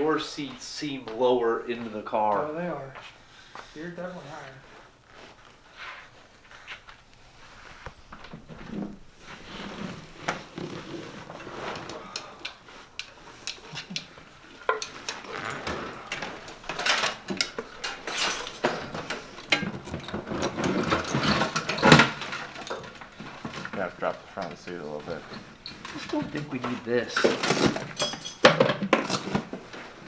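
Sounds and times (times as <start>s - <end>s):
objects clinking and knocking: 11.4s - 29.8s.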